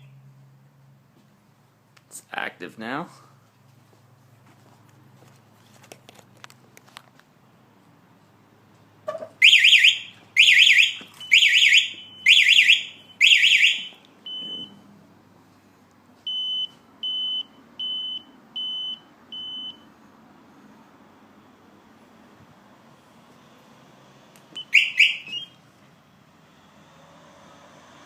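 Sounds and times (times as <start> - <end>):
warbling motorcycle alarm siren: 9.1 - 14.8, 24.6 - 25.6
short steady alarm beeps: 9.4 - 14.8, 16.3 - 19.9, 24.6 - 25.6.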